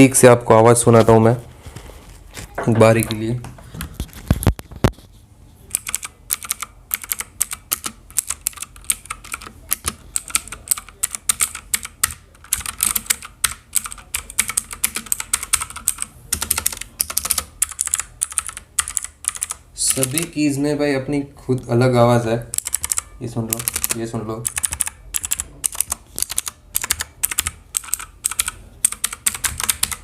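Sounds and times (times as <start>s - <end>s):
mechanical keyboard clicking: 5.7s - 20.3s, 22.5s - 30.0s.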